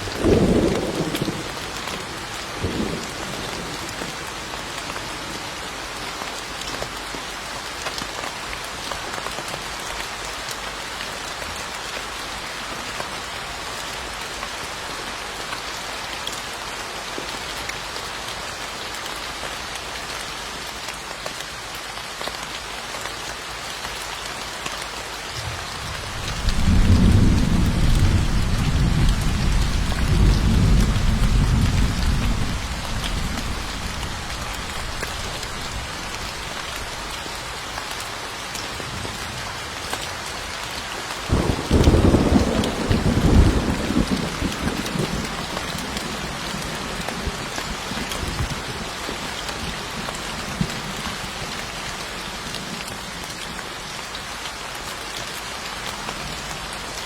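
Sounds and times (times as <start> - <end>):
thunder rumbling: 0.0 - 1.6, 25.4 - 36.2, 41.3 - 45.2
steady rain falling: 0.0 - 57.0.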